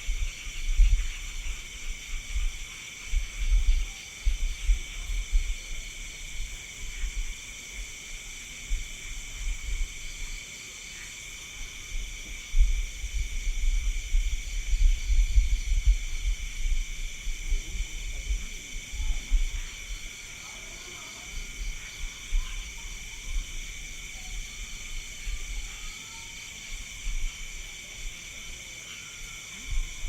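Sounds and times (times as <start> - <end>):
night insects trilling: 0.0 - 30.0.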